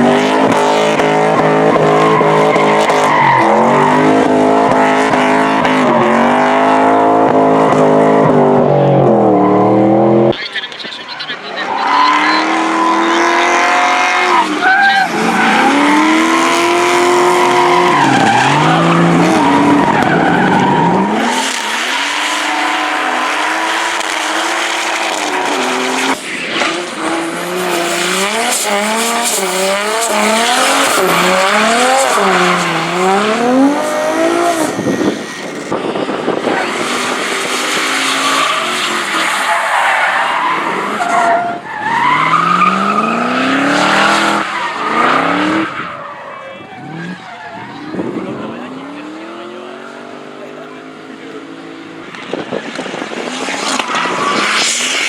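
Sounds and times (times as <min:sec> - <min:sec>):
car engine revving: 0:00.0 - 0:55.0
tyre squeal: 0:11.7 - 0:37.1.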